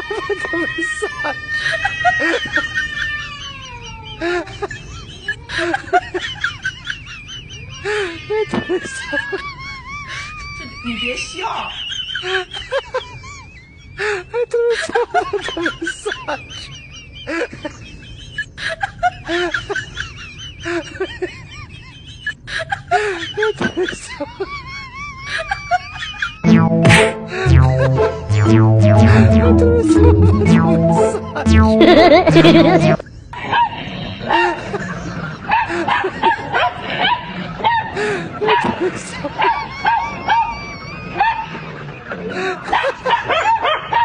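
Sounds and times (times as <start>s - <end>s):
dog yipping and whimpering: 39.5s - 41.7s.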